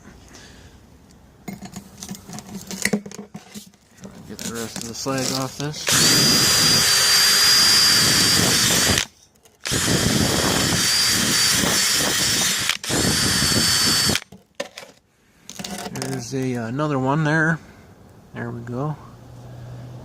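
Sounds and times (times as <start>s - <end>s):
power tool high whine: 5.8s - 14.2s.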